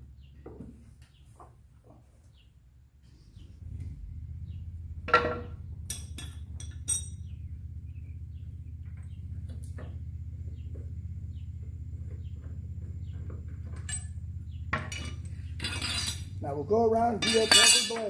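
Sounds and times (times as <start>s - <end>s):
steady low hum: 3.2s - 18.0s
wrench clanking on metal bolt: 14.8s - 16.4s, 17.2s - 18.0s.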